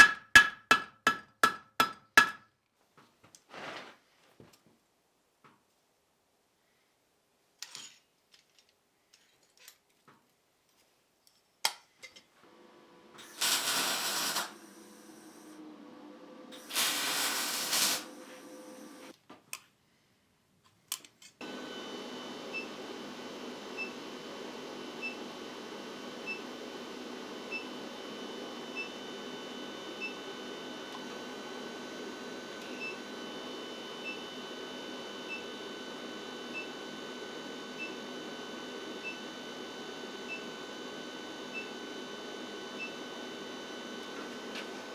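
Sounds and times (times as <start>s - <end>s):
induction forge humming and whining: 12.5s - 19.1s, 21.4s - 44.9s
short hissing bursts: 13.2s - 15.2s, 16.6s - 19.1s.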